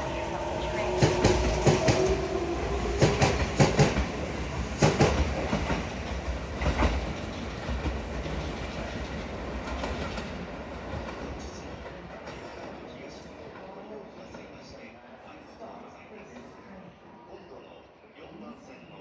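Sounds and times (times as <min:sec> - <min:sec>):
train running rumble: 0:00.0 - 0:11.6
train wheels clicking over joints: 0:00.0 - 0:12.8.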